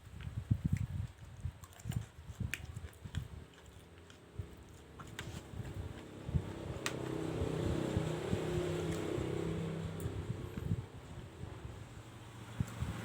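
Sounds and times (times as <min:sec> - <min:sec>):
chewing noodles: 0:00.2 - 0:08.0.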